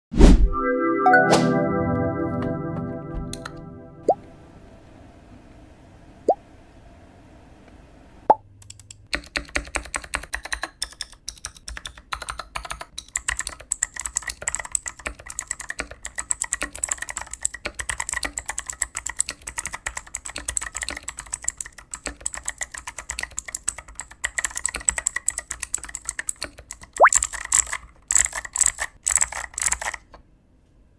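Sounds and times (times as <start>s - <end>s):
mechanical keyboard typing: 8.6s - 30.2s.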